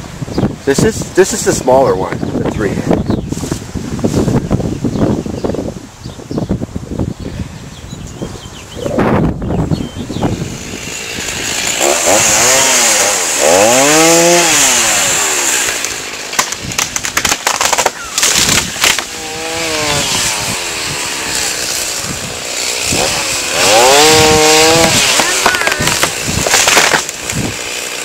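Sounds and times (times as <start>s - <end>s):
chainsaw cutting wood: 10.2s - 28.0s
sharp cracks: 10.9s - 28.0s.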